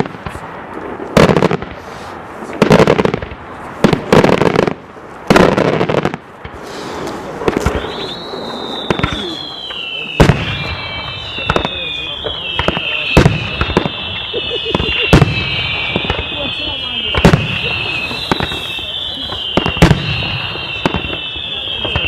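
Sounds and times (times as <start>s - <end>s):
fireworks bangs: 0.0s - 22.0s
fireworks crackling: 0.0s - 22.0s
falling firework whistles: 5.9s - 22.0s.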